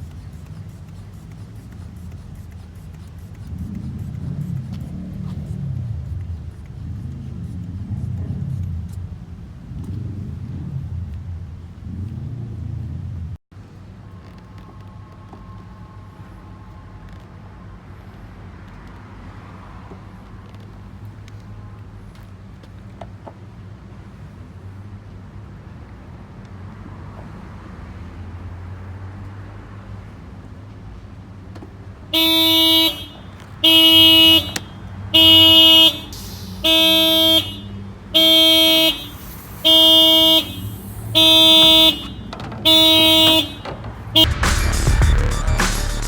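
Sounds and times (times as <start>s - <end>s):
car horn alarm blasts: 32.1s - 46.0s.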